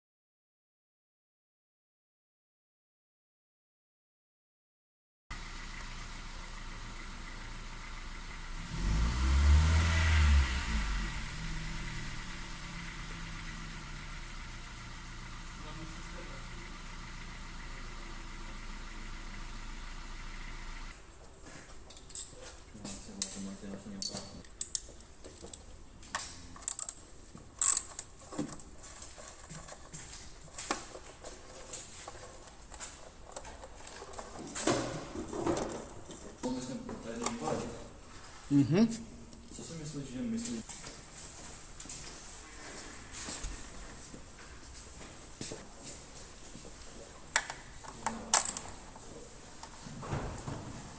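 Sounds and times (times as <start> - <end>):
misfiring car engine revving: 5.3 - 20.9.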